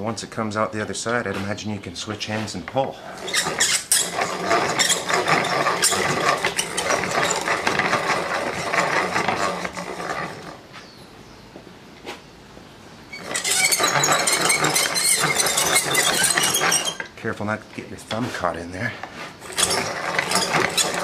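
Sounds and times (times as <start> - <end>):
wood shaving rapid clattering: 3.1 - 10.6, 13.1 - 17.1, 19.4 - 21.0.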